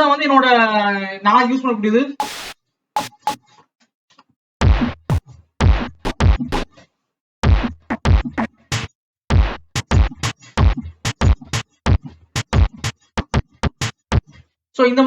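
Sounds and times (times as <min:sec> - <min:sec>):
kick and snare drum hits: 0:02.2 - 0:03.4, 0:04.6 - 0:06.7, 0:07.4 - 0:14.3.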